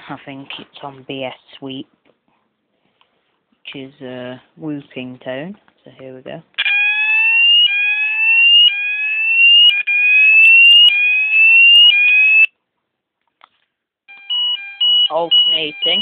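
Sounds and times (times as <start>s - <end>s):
fire alarm sweeping tone: 6.6s - 12.5s, 14.1s - 16.0s
two-pitch alternating alarm tone: 6.7s - 12.5s, 14.1s - 16.0s.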